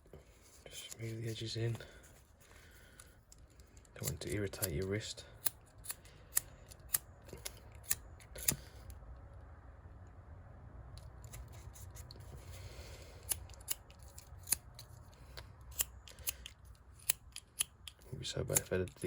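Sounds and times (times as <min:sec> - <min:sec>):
lighter spark wheel clicking: 0:05.4 - 0:08.6, 0:15.7 - 0:18.0.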